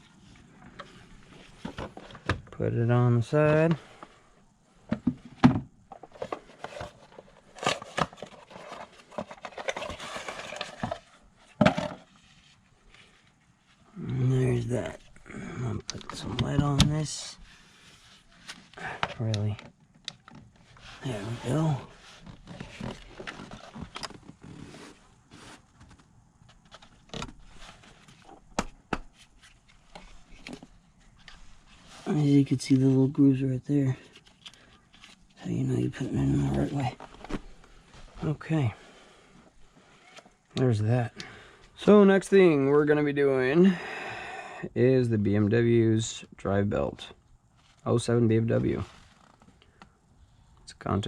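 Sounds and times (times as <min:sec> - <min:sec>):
plastic parts scraping: 0:05.9 - 0:13.2.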